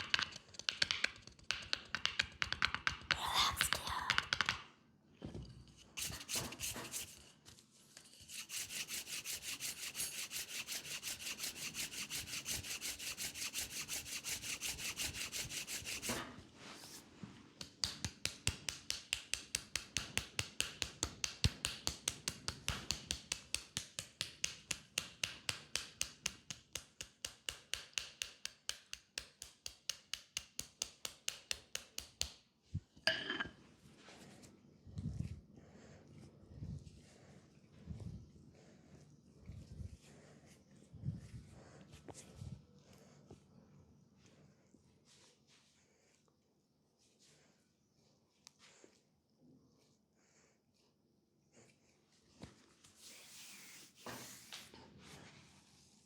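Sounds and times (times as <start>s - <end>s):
hands rubbing skin: 8.3s - 17.0s, 52.4s - 54.7s.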